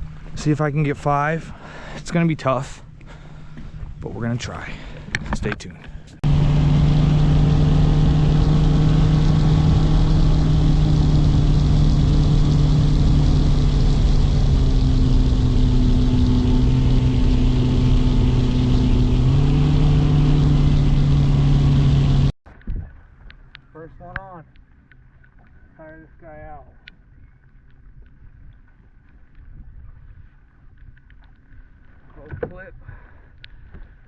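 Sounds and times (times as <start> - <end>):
outboard motor droning: 6.0 - 22.4.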